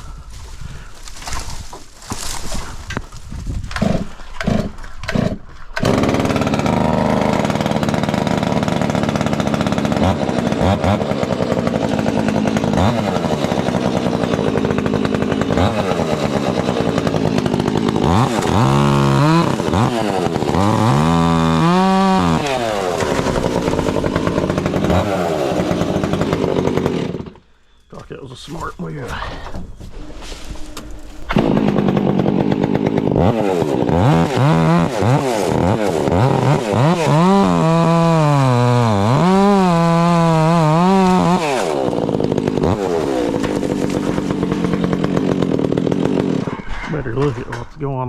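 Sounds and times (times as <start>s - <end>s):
engine sputtering and revving: 31.3s - 46.4s.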